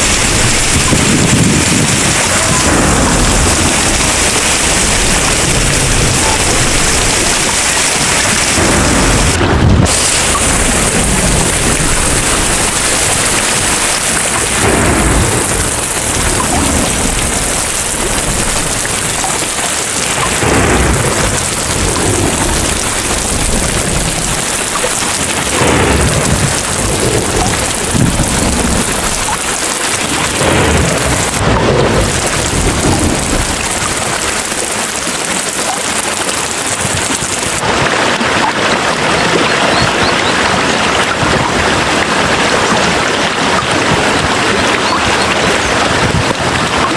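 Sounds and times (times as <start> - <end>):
low rolling thunder: 0.0 - 35.5
heavy rain falling: 0.0 - 46.9.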